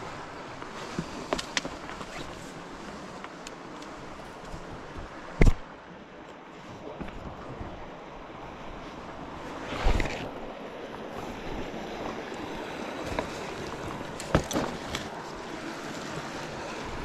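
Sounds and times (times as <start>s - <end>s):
river current rushing: 0.0s - 17.0s.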